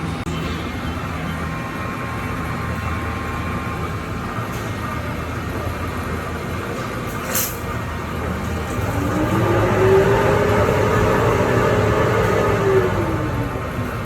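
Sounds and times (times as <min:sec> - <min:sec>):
machinery hum: 0:00.0 - 0:14.0.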